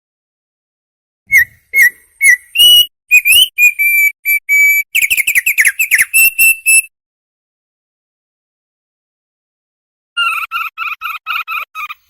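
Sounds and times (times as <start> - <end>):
songbird whistling: 1.3 - 6.9.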